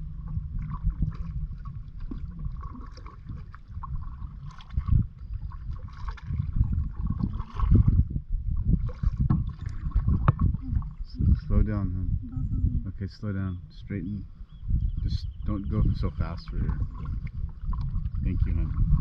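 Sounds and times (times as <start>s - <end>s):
water splashing around paddles: 0.0s - 11.5s, 15.8s - 19.0s
wind rumble on microphone: 0.0s - 19.0s.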